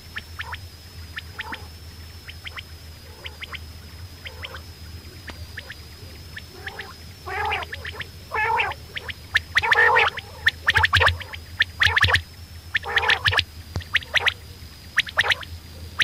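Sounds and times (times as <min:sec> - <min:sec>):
quail rough gurgling calls: 0:01.2 - 0:01.7, 0:02.3 - 0:03.6, 0:04.2 - 0:16.0
quail clicking notes: 0:02.3 - 0:03.6, 0:04.2 - 0:04.6, 0:05.2 - 0:16.0.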